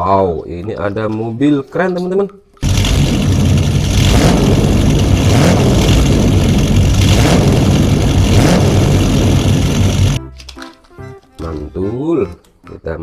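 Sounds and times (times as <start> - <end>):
car engine revving: 2.6 - 10.2.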